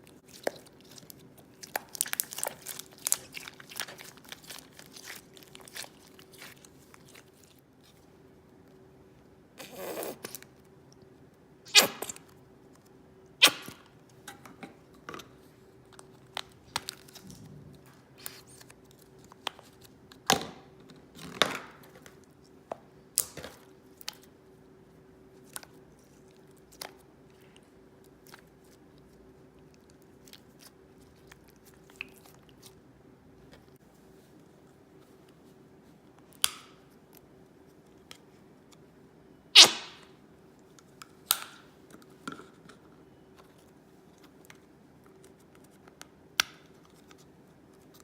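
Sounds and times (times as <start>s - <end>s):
slime crackling and popping: 0.3s - 7.6s
faint steady hum: 21.8s - 48.0s.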